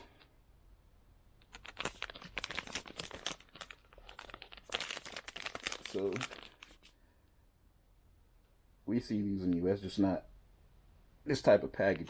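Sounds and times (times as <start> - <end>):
plastic wrapper crinkling: 1.4 - 7.0.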